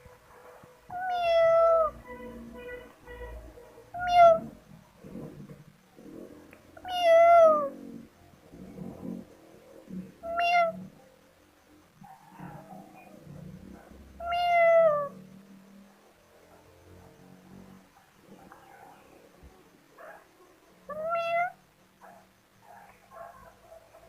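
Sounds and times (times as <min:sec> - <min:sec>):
kittens meowing: 0:00.9 - 0:02.2, 0:04.0 - 0:04.6, 0:06.8 - 0:07.8, 0:10.2 - 0:11.0, 0:14.2 - 0:15.2, 0:20.9 - 0:21.6.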